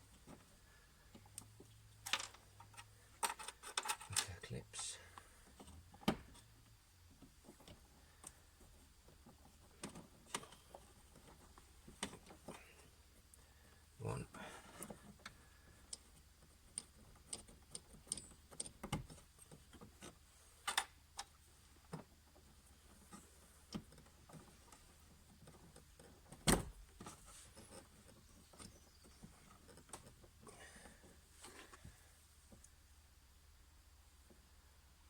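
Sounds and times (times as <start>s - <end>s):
small clicks and taps: 14.8s - 22.1s.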